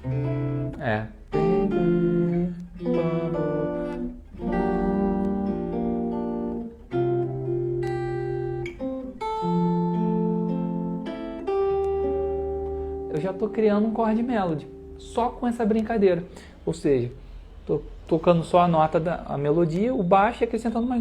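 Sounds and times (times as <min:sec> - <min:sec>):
guitar playing slow chords: 0:00.0 - 0:16.5.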